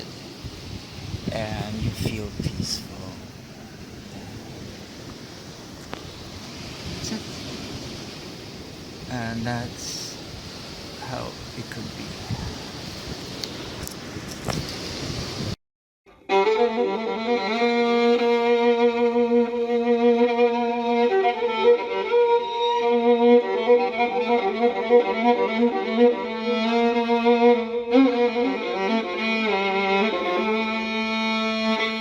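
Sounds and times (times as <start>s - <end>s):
rush of wind-like noise: 0.0s - 15.6s
violin playing sustained notes: 16.1s - 32.0s.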